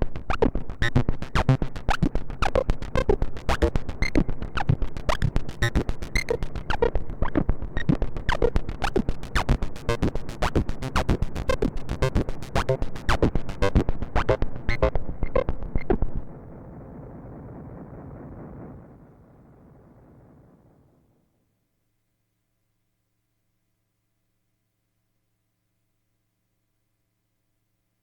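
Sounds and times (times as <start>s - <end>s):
synthesizer percussive notes: 0.0s - 16.3s.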